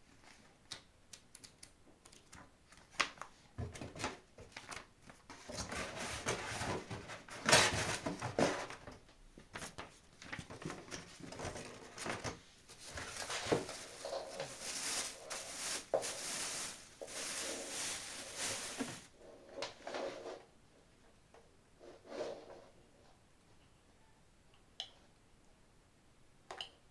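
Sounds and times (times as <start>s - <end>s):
packaging rustling and scraping: 4.0s - 9.0s, 9.6s - 19.2s.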